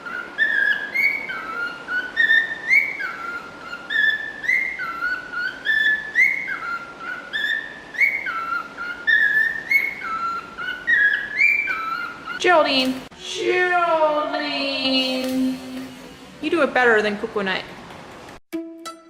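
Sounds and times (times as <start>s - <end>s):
cockatiel whistling a tune: 0.0s - 12.4s.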